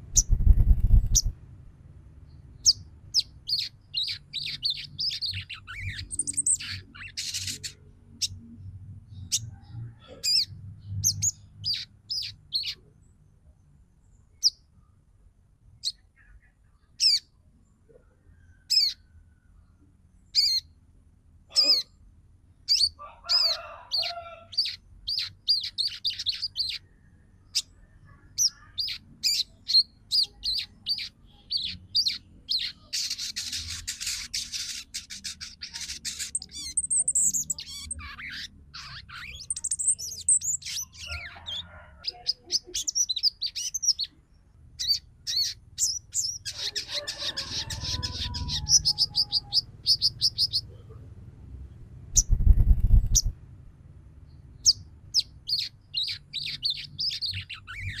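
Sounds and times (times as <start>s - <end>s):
bird chirping high and sharp: 0.0s - 1.3s, 2.6s - 8.4s, 10.3s - 12.8s, 20.4s - 20.7s, 22.7s - 26.8s, 28.4s - 41.3s, 44.8s - 50.6s, 52.2s - 53.3s, 54.6s - 58.0s.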